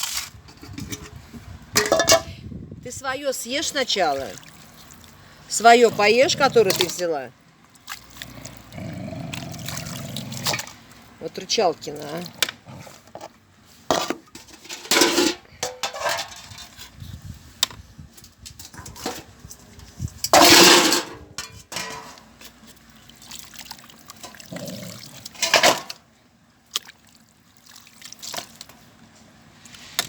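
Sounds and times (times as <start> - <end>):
dogs chewing and slurping: 7.7 - 13.3.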